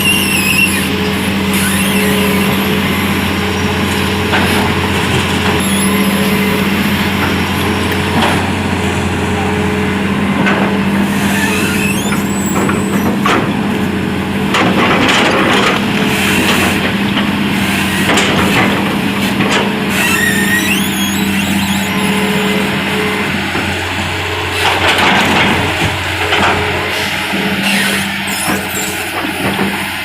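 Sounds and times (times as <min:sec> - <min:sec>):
high squeals and creaks: 0:00.0 - 0:07.9, 0:11.1 - 0:13.2, 0:19.9 - 0:23.3, 0:26.9 - 0:29.8
heavy diesel machinery humming: 0:00.0 - 0:30.0.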